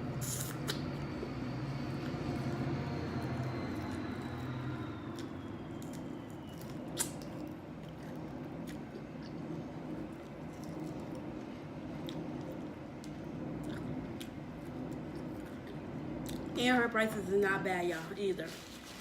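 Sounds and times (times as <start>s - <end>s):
low background hum: 0.0s - 19.0s
wet chewing: 5.2s - 11.3s.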